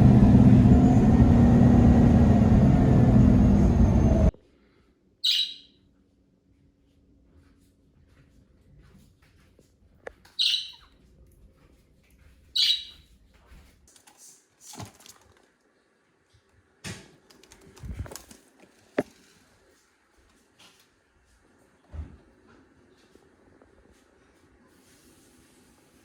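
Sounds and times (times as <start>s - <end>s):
budgerigar shrill calls: 5.2s - 5.7s, 10.4s - 10.8s, 12.6s - 12.9s.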